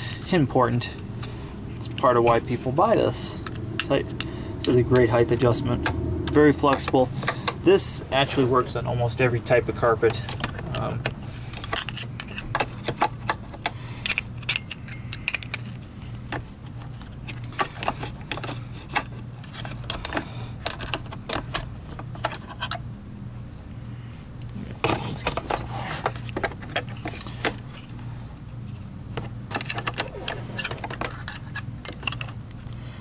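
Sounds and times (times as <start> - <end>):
steady low hum: 0.0 - 33.0
plastic parts clicking: 17.3 - 22.8.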